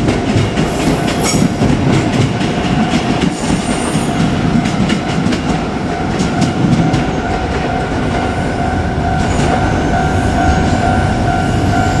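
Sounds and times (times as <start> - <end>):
wheels clacking over rail joints: 0.0 - 8.4
train rumbling past: 0.0 - 12.0
two-tone crossing warning bell: 3.7 - 12.0.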